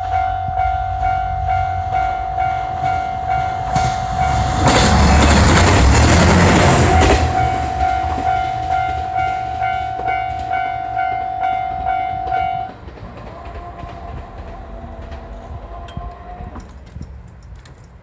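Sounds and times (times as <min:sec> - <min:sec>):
level-crossing alarm ringing: 0:00.0 - 0:12.8
diesel railcar rumble: 0:00.0 - 0:18.0.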